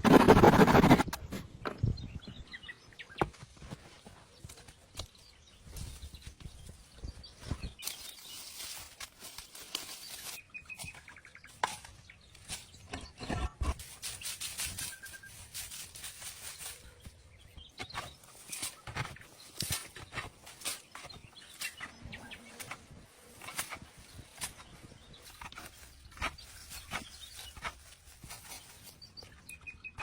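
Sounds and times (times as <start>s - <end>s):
rustling from handwork: 0.0s - 1.1s, 3.4s - 29.4s
bird chirps: 9.9s - 13.5s, 24.0s - 30.0s.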